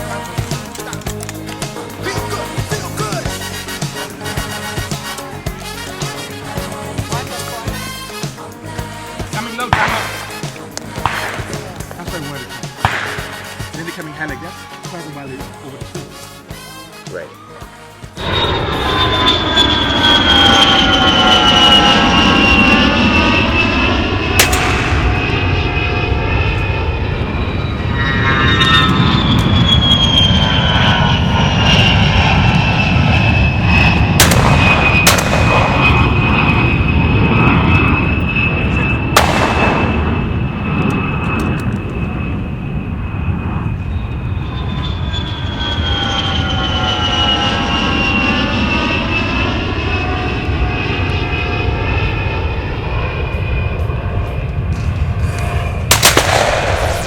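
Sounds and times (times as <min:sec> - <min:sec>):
aircraft engine droning overhead: 0:00.0 - 0:57.0
sharp bangs: 0:09.4 - 0:14.2, 0:24.2 - 0:26.4, 0:33.8 - 0:37.9, 0:39.1 - 0:40.7, 0:55.4 - 0:57.0.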